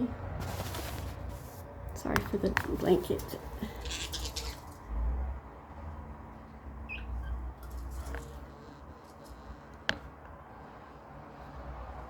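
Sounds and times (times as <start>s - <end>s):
budgerigar chirping: 6.8s - 7.5s.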